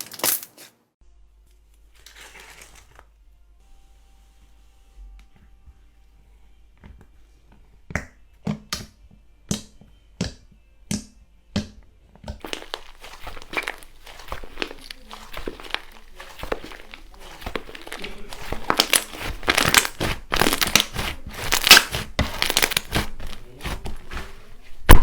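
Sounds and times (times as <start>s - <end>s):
slime popping and crackling: 12.4s - 25.0s.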